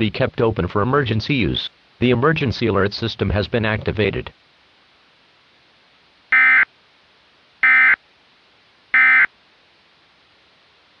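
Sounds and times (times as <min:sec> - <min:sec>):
high-pitched digital data tones: 0:06.3 - 0:06.7, 0:07.6 - 0:08.0, 0:09.0 - 0:09.3.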